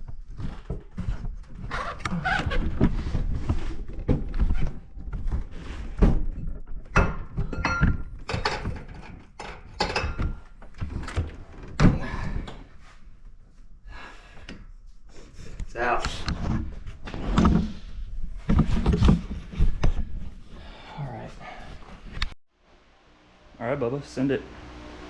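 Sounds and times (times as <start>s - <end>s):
tools knocking and metal clanking: 6.8s - 11.7s.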